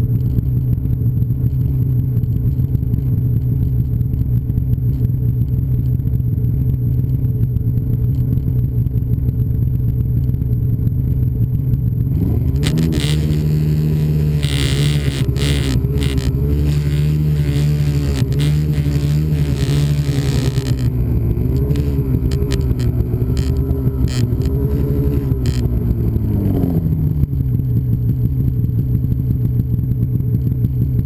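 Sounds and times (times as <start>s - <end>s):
snowmobile engine revving: 12.1s - 27.1s.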